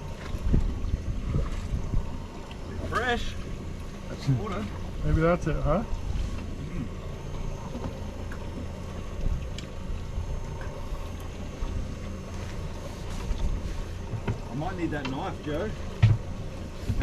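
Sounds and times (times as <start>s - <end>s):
wind noise: 0.0s - 2.4s
boat engine idling: 0.0s - 17.0s
water noise: 0.0s - 17.0s.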